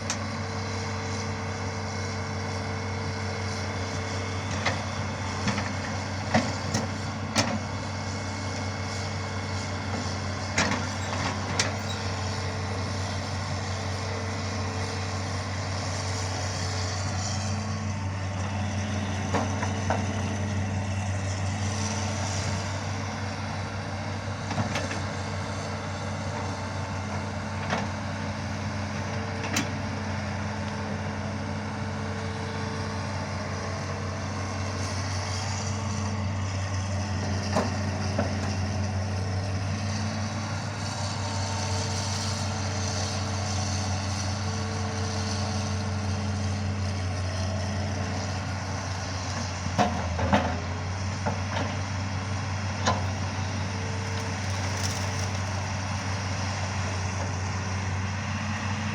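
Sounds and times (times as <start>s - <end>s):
excavator diesel engine running: 0.0s - 58.9s.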